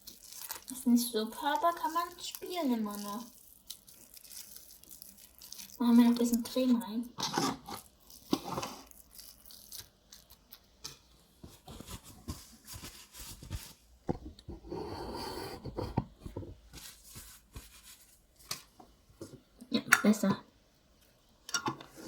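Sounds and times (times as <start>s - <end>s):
sticky slime tearing and scraping: 0.0s - 1.0s, 1.6s - 6.5s, 7.2s - 10.7s
rustling: 11.4s - 14.0s, 16.2s - 18.8s.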